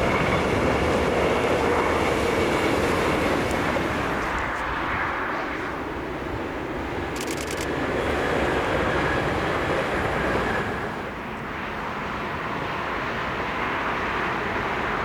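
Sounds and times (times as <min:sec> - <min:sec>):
train rumbling past: 0:00.0 - 0:15.0.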